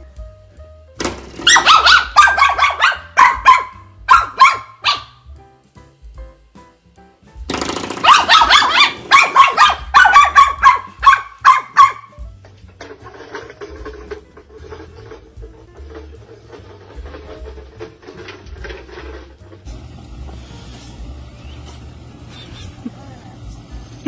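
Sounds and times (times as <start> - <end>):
dog barking: 1.4 - 5.2, 8.0 - 12.2.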